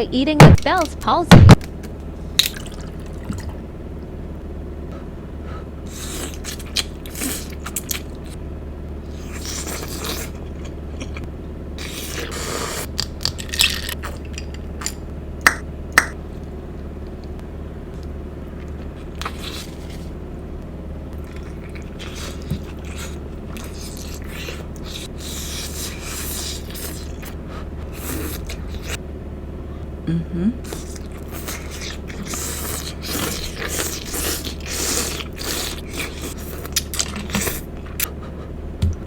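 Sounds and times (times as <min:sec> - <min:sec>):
steady low hum: 0:00.0 - 0:39.0
chewing and scraping: 0:05.9 - 0:08.4, 0:09.1 - 0:15.0, 0:18.0 - 0:20.2, 0:21.1 - 0:29.0, 0:30.6 - 0:38.6.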